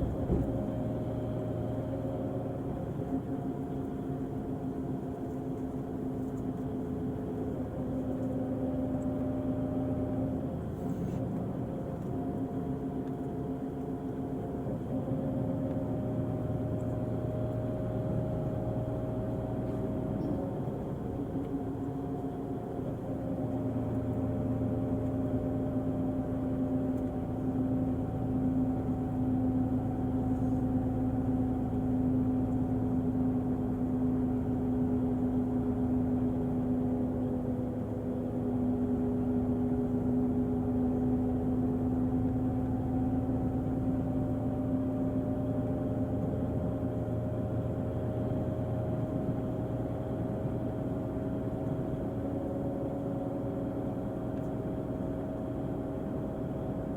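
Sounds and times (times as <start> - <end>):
diesel engine droning: 0.0 - 5.1.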